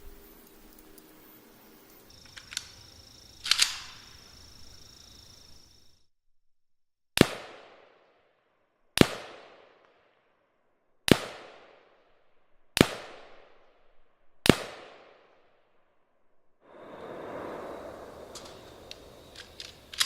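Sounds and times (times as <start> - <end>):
rifle shots with echo: 7.2 - 8.1, 9.0 - 9.9, 11.1 - 12.0, 12.8 - 13.6, 14.4 - 15.4.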